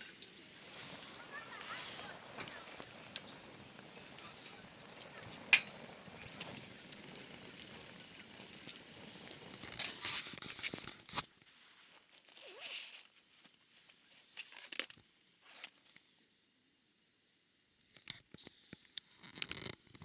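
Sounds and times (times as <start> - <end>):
steady hiss: 0.0 - 19.8
rustling and crinkling: 6.1 - 16.1.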